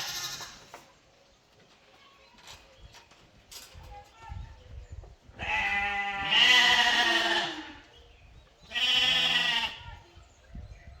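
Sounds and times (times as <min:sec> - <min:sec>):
sheep bleating: 0:05.4 - 0:07.8, 0:08.7 - 0:09.8.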